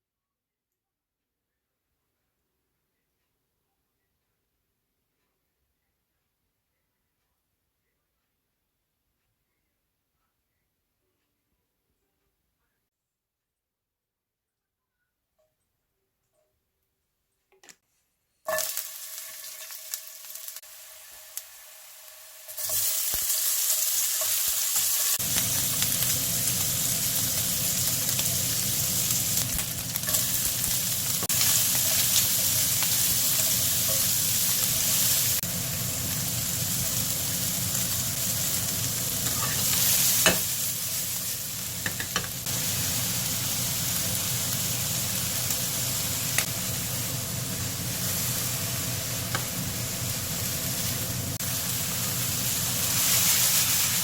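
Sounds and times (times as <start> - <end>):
food sizzling in a pan: 18.5 - 54.0
utensil clicking against pan: 41.8 - 42.4.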